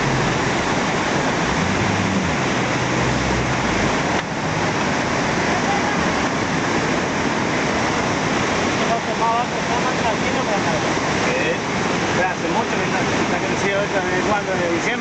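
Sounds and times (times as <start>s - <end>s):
boat motor humming: 0.0s - 12.2s
waterfall and rapids rushing: 0.0s - 15.0s.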